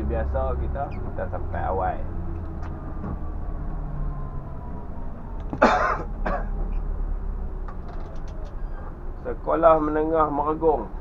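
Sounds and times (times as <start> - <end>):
bus diesel engine humming: 0.0 - 11.0
person coughing: 5.6 - 6.7.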